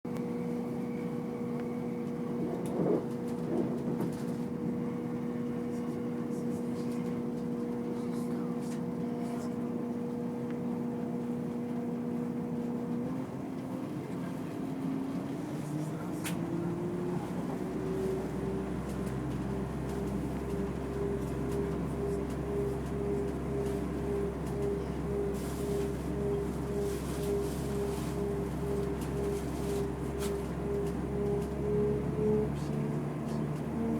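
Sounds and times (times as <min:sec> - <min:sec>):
vehicle mechanical drone: 0:15.4 - 0:33.9
low hum: 0:16.4 - 0:33.9.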